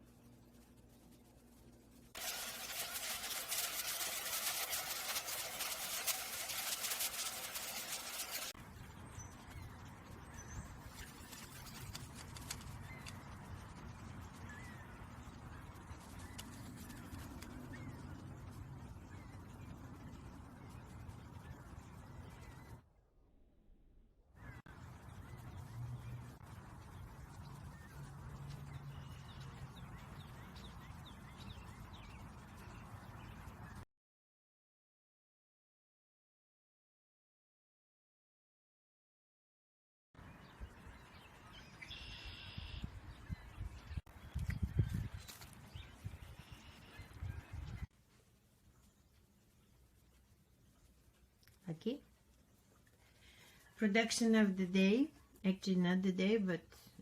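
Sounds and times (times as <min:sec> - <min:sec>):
bird chirping: 0:24.4 - 0:33.8, 0:40.2 - 0:47.9
faint bird chirps: 0:40.3 - 0:47.9.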